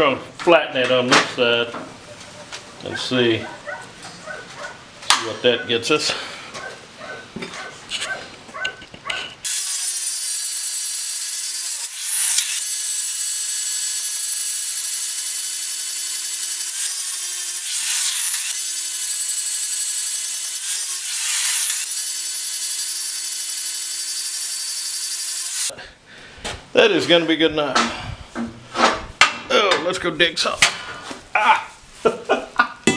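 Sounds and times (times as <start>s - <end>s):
power grinder grinding steel bar: 9.4s - 25.7s.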